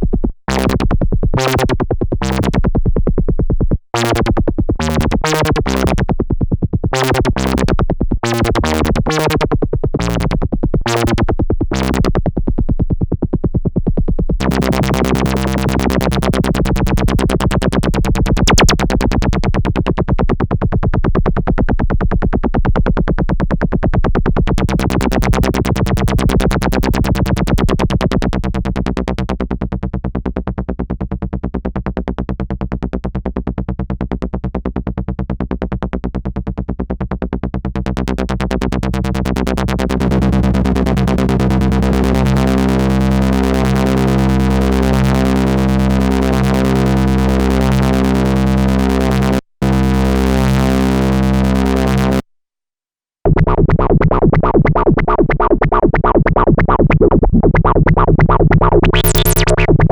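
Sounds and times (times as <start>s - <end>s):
pulsing synthesizer pattern: 0.5s - 0.8s, 1.4s - 2.6s, 4.0s - 6.0s, 6.9s - 12.1s, 14.4s - 19.2s, 24.7s - 29.3s, 37.9s - 50.5s, 58.8s - 59.9s
synthesizer bass pattern: 0.5s - 2.6s, 4.0s - 6.1s, 6.9s - 12.1s, 14.4s - 19.5s, 24.6s - 29.3s, 37.8s - 52.2s, 58.2s - 59.9s.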